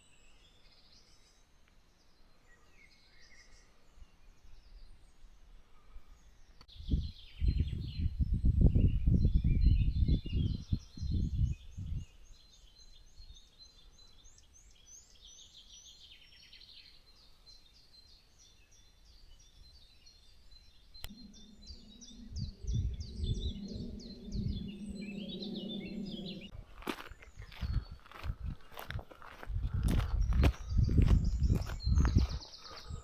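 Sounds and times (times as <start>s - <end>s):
songbirds chirping: 0.0s - 33.0s
steady low hum: 21.0s - 33.0s
low thumps: 21.1s - 26.5s.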